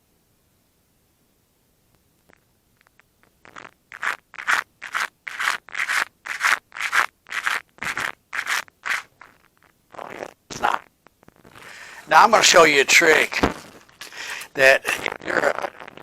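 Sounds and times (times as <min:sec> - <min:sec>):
sandpaper rubbing back and forth: 0:03.9 - 0:09.1.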